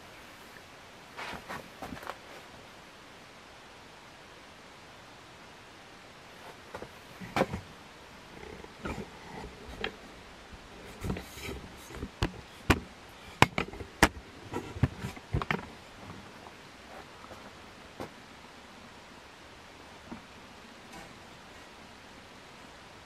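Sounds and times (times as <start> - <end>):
ceiling fan air hiss: 0.0 - 23.0
sharp clicks and knocks: 10.9 - 15.7.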